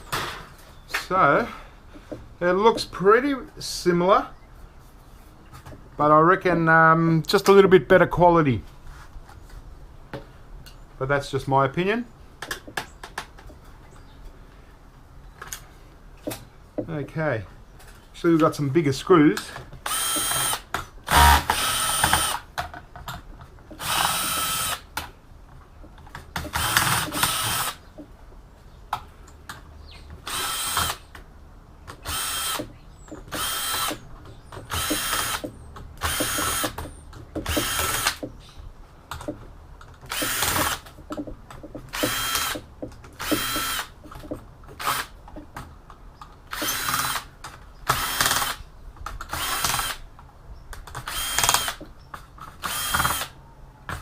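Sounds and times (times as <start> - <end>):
cordless screwdriver whining: 19.8 - 22.4, 23.8 - 24.8, 30.3 - 31.0, 34.7 - 36.8, 40.1 - 40.9, 41.9 - 42.6, 43.2 - 43.9, 46.5 - 47.3, 51.1 - 51.8, 52.6 - 53.3.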